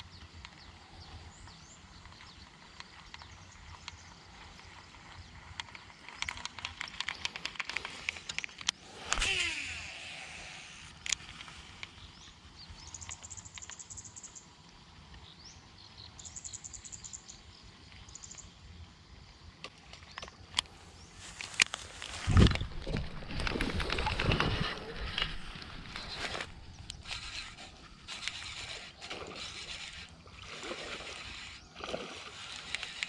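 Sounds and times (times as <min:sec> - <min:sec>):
reel spool whirring: 0:00.0 - 0:14.2, 0:21.4 - 0:33.0
high insect trills: 0:00.1 - 0:14.4, 0:20.0 - 0:33.0
fishing reel and line clicks: 0:01.5 - 0:14.2, 0:21.5 - 0:33.0.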